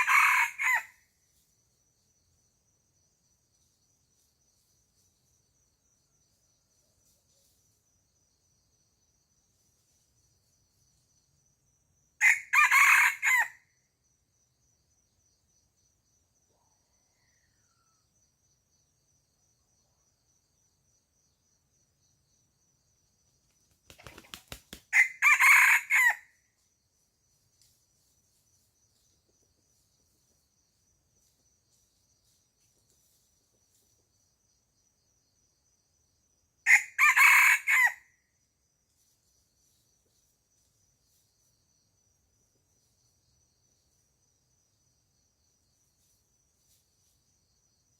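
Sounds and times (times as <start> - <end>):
rooster crowing: 0.0 - 1.0, 12.2 - 13.6, 24.9 - 26.3, 36.6 - 38.1
wings flapping: 23.6 - 25.0.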